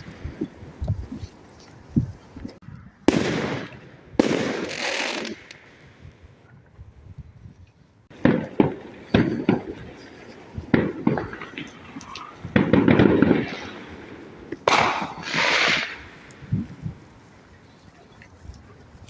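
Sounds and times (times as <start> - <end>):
crackling hiss: 0.0 - 6.6, 8.1 - 18.8
fireworks bangs: 3.0 - 6.1, 8.1 - 16.6
rapid sharp firework cracks: 3.1 - 5.7, 8.1 - 9.9, 12.5 - 16.1.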